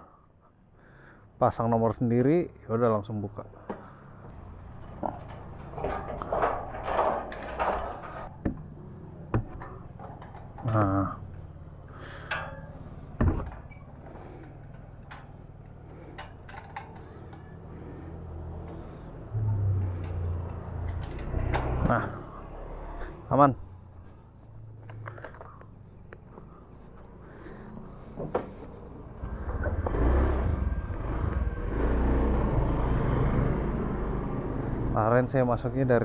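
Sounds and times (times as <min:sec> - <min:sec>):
scooter engine rumble: 0:03.5 - 0:35.0
metal gate thump: 0:04.7 - 0:08.3, 0:12.2 - 0:13.7.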